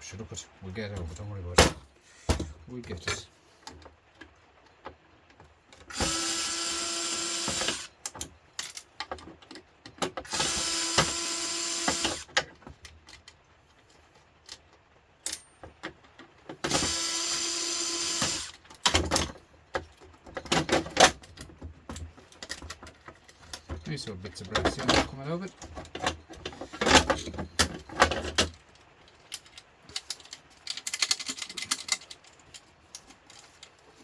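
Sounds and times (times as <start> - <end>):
power drill running: 5.9 - 7.9, 10.3 - 12.3, 16.7 - 18.5
metal parts clicking and clattering: 7.6 - 11.2, 12.0 - 16.8, 18.2 - 34.0.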